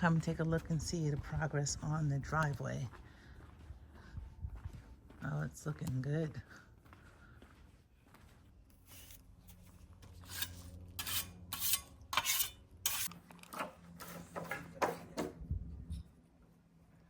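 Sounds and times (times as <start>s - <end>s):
hand tool scraping concrete: 8.8s - 14.6s.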